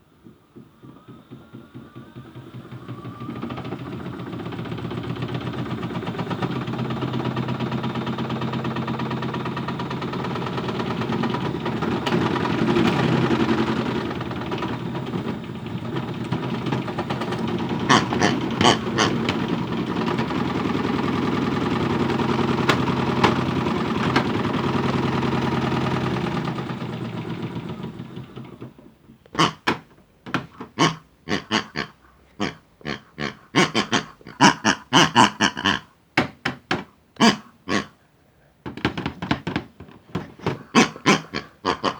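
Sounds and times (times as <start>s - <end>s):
toy washing machine motor running: 0.6s - 35.9s, 38.8s - 41.9s
hard objects rattling in drum: 1.8s - 28.4s.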